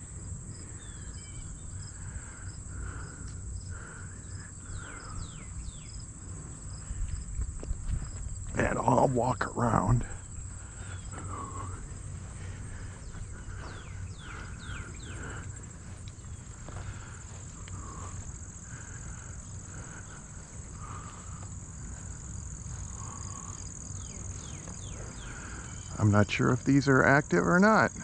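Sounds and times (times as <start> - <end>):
insects chirring: 0.0 - 28.0
footsteps in grass: 6.0 - 9.0, 10.2 - 26.1.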